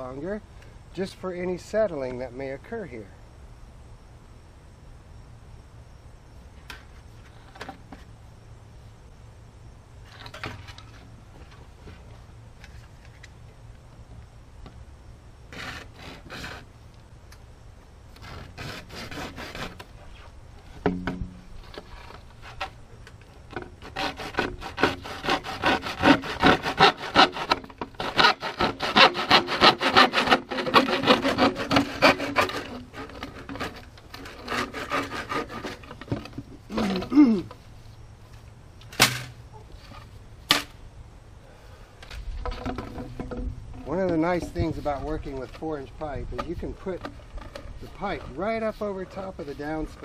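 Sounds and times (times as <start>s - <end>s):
hand saw cutting pipe: 15.5s - 16.7s, 18.2s - 20.3s, 23.5s - 37.1s, 42.4s - 50.0s.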